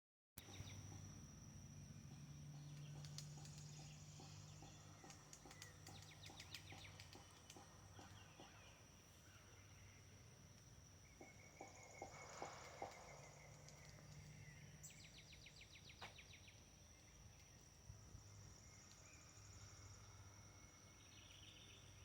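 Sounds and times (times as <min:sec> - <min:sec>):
bird chirps: 0:00.4 - 0:01.0, 0:02.0 - 0:10.3, 0:11.0 - 0:17.7
high insect trill: 0:00.4 - 0:22.0
woodpecker tapping on wood: 0:02.8 - 0:08.7, 0:11.1 - 0:14.2.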